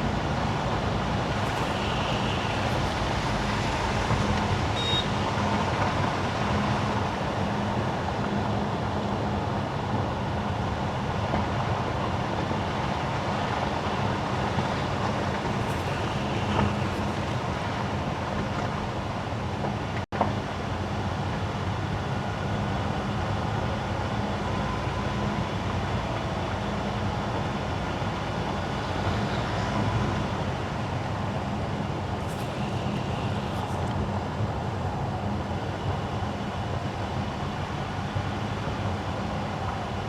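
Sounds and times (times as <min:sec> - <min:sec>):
low car hum: 0:00.0 - 0:07.2.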